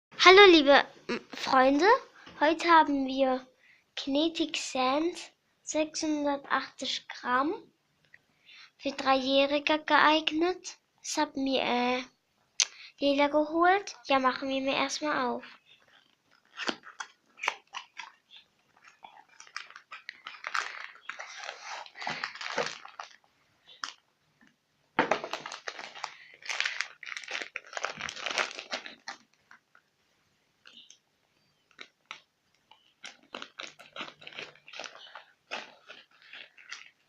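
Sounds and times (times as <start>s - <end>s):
wrapping crinkling and rustling: 13.8s - 30.0s, 30.6s - 37.0s.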